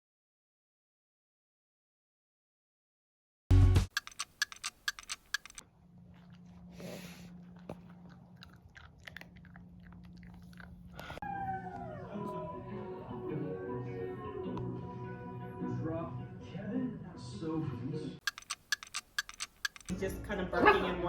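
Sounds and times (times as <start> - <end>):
puppy chewing crunching: 3.9 - 11.2, 18.2 - 19.9.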